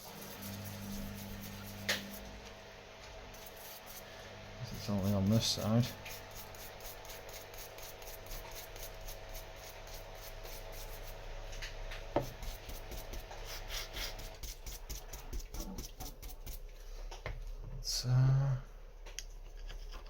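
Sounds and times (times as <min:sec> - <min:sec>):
small brush scrubbing: 0:00.0 - 0:02.6, 0:03.3 - 0:11.3, 0:12.2 - 0:17.0.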